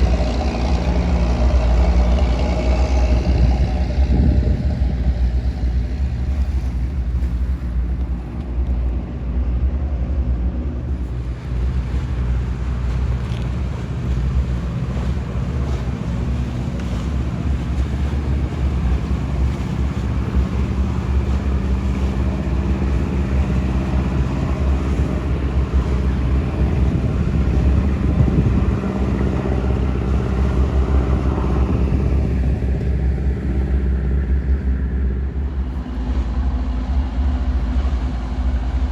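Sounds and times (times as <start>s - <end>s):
boat diesel engines rumbling: 0.0s - 38.9s
water noise: 0.0s - 38.9s
wind: 0.0s - 38.9s.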